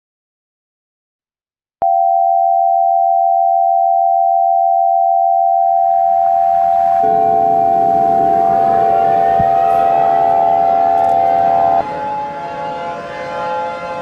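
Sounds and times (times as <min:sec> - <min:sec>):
steady two-pitch attention tone: 0:04.2 - 0:12.4
siren-like gliding noise: 0:05.3 - 0:14.0.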